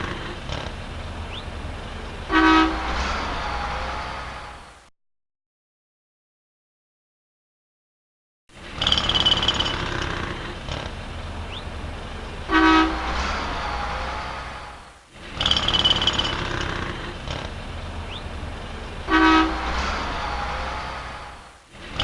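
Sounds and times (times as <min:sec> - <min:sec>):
passing vehicles rumble: 0:00.0 - 0:04.9, 0:08.5 - 0:22.0
car horn honk: 0:02.3 - 0:03.0, 0:12.5 - 0:13.2, 0:19.1 - 0:21.0.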